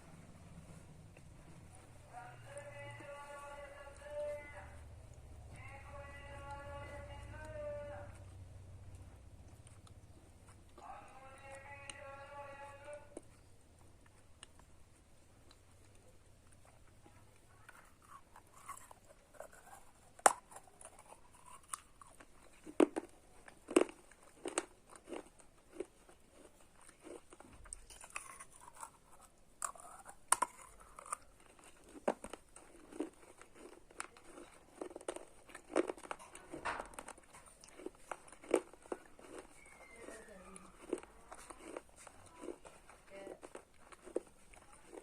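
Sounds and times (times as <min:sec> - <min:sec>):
grinding chews: 0:00.0 - 0:45.0
slate pencils crunching when bitten: 0:17.6 - 0:45.0.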